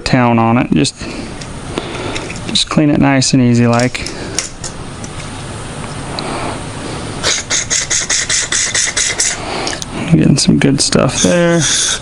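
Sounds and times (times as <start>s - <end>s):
low steady hiss: 0.0s - 12.0s
tip cleaner scraping metal jet: 11.0s - 12.0s.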